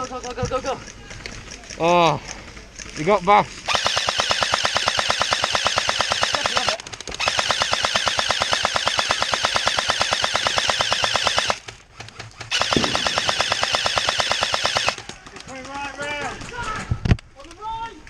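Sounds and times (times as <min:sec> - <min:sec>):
airsoft gun firing bursts: 0:03.0 - 0:16.8.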